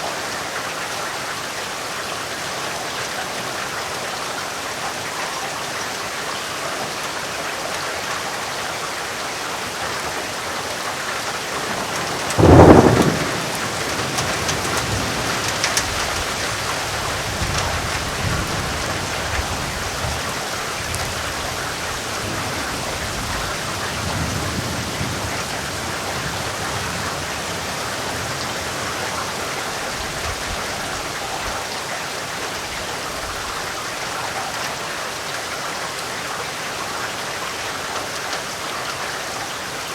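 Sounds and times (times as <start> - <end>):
heavy rain falling: 0.0 - 39.9
rolling thunder rumbling: 11.5 - 31.4
loud thunderclap: 11.6 - 19.5.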